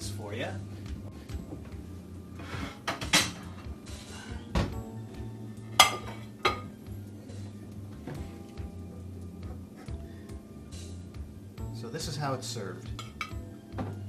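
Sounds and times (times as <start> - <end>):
soft background music: 0.0 - 14.0
spoon clinking against pot: 5.8 - 6.7, 12.9 - 13.4.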